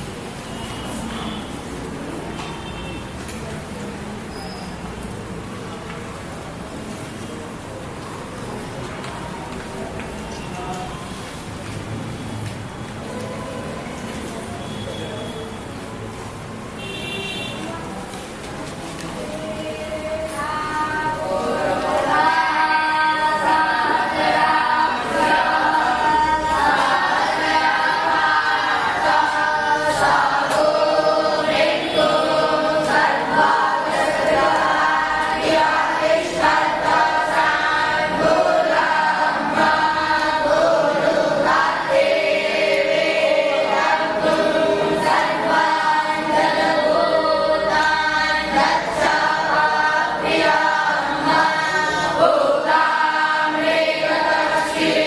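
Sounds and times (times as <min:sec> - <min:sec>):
voices chanting in unison: 0:19.4 - 0:55.0.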